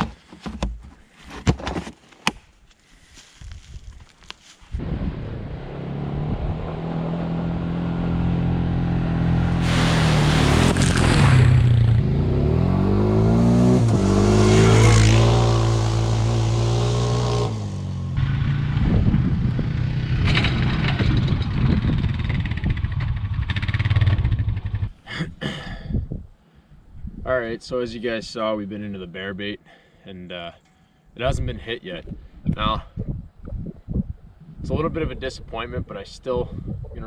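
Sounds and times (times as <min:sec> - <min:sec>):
vehicle engine running: 0:17.8 - 0:24.9.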